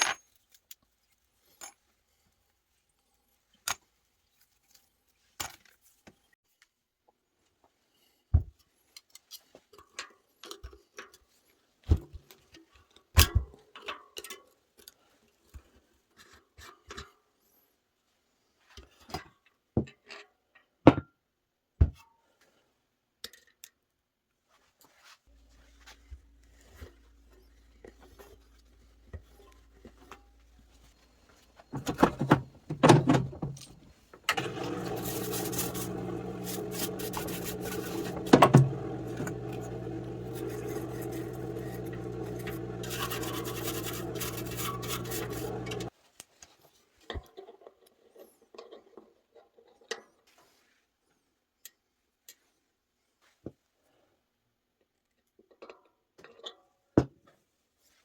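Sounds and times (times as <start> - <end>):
machine motor humming: 34.3 - 45.9.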